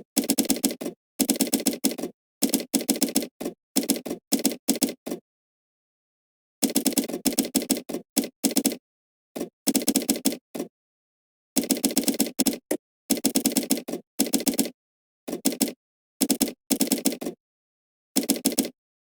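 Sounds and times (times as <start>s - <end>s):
computer keyboard typing: 0.2s - 5.0s, 6.6s - 8.8s, 9.7s - 10.4s, 11.6s - 14.7s, 15.3s - 17.4s, 18.2s - 18.8s.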